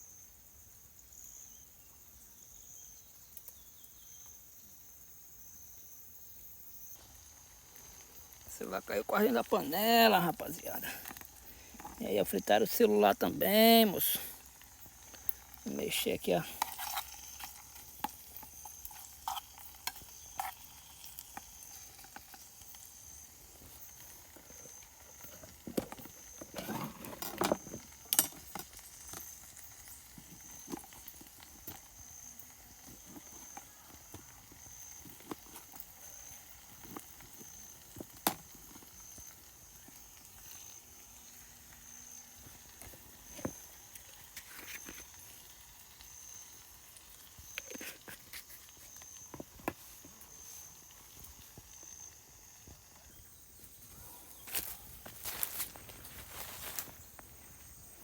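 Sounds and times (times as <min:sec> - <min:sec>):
food sizzling in a pan: 0:00.0 - 0:58.0
utensil scraping a pan: 0:15.0 - 0:22.8, 0:23.8 - 0:28.6.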